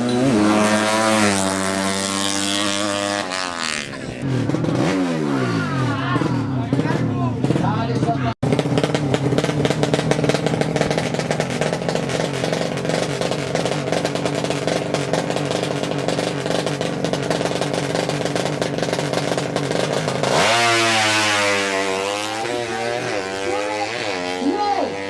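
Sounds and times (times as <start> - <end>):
motorcycle engine idling and revving: 0.0 - 25.0.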